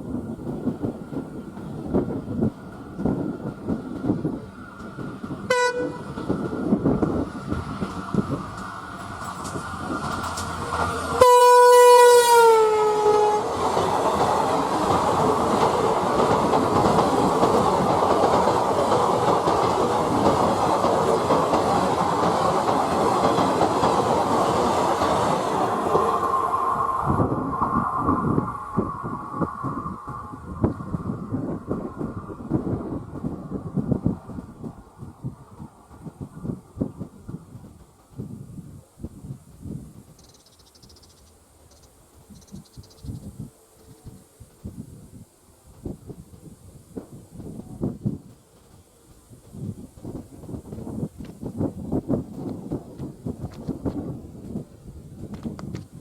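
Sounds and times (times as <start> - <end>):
train coaches clickety-clack: 0.0 - 56.0
locomotive horn: 5.5 - 6.2, 11.2 - 13.6.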